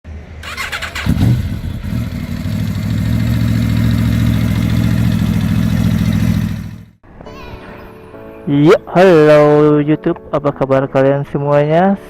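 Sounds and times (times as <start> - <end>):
scooter engine idling: 0.5 - 7.0.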